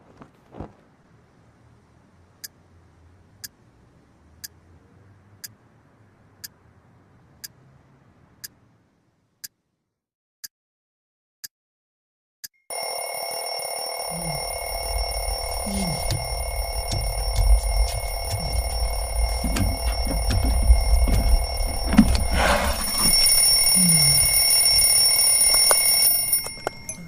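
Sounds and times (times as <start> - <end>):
alarm clock ringing: 12.7 - 27.0
alarm clock ticking: 12.7 - 27.0.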